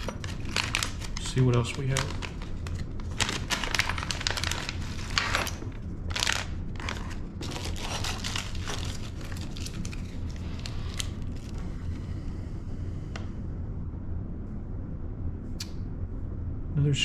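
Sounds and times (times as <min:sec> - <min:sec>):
plastic packaging crinkling: 0:00.0 - 0:11.6.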